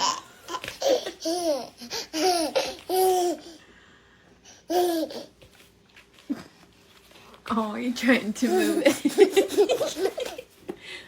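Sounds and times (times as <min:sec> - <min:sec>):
baby laughing and squealing: 0:00.0 - 0:03.5.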